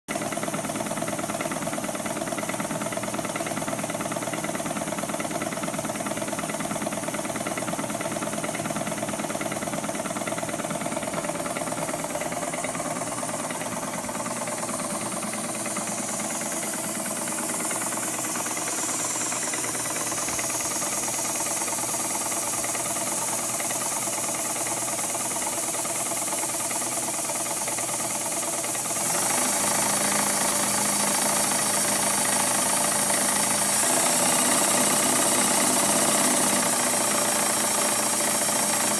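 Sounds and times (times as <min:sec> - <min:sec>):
sewing machine chattering: 0:00.1 - 0:38.9.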